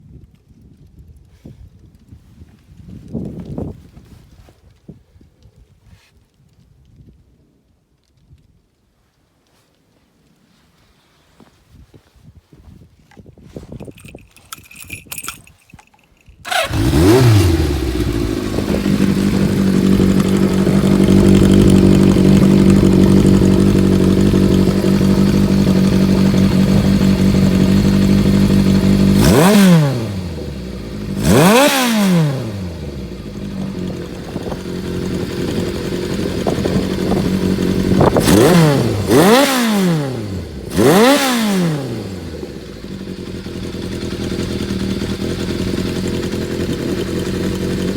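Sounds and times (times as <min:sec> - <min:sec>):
motorcycle engine idling and revving: 0:13.6 - 0:47.9.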